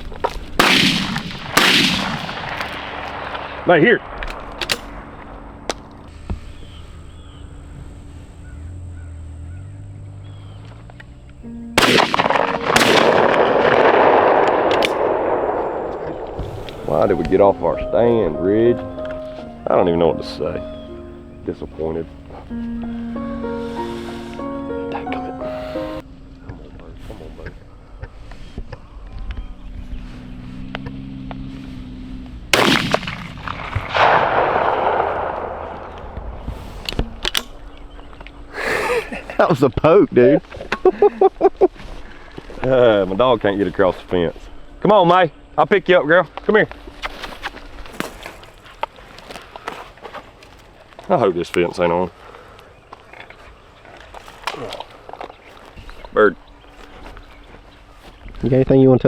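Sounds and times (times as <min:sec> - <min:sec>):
gunshot echo: 0:00.6 - 0:03.6, 0:11.8 - 0:17.5, 0:32.6 - 0:37.2
shotgun shots: 0:00.6 - 0:03.6, 0:11.8 - 0:17.4, 0:32.6 - 0:36.5.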